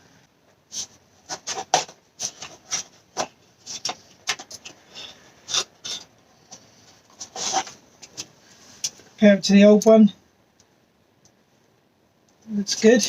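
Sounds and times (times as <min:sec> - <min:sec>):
loud scrape: 0:07.2 - 0:07.8.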